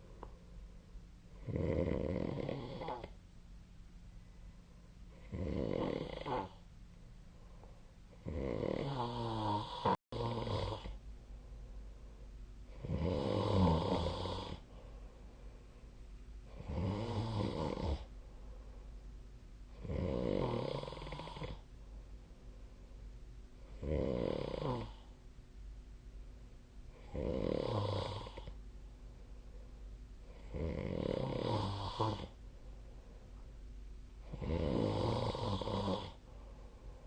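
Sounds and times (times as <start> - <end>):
person snoring: 1.4 - 3.1, 5.2 - 6.6, 8.2 - 11.0, 12.7 - 14.7, 16.5 - 18.1, 19.7 - 21.6, 23.7 - 25.1, 26.9 - 28.6, 30.3 - 32.4, 34.2 - 36.2.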